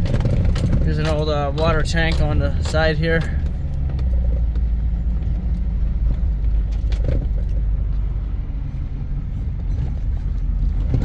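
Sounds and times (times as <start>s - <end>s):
knocks and rattles from bumps: 0.0s - 7.8s
vehicle rumbling on dirt road: 0.0s - 11.0s.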